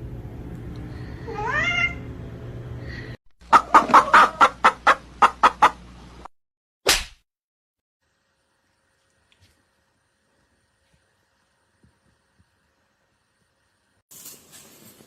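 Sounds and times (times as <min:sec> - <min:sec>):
sharp clucking calls: 0:03.4 - 0:05.8.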